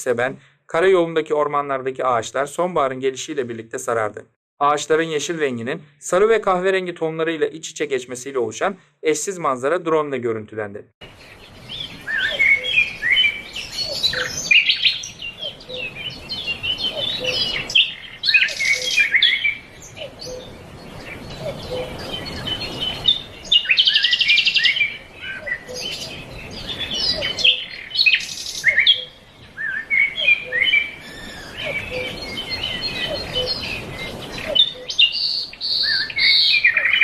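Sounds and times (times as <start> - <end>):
songbirds chirping and singing: 11.0 - 37.0.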